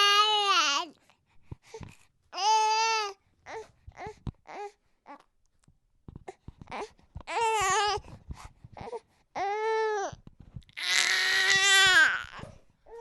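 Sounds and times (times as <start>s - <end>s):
baby crying: 0.0s - 0.8s, 2.4s - 3.6s, 10.8s - 13.0s.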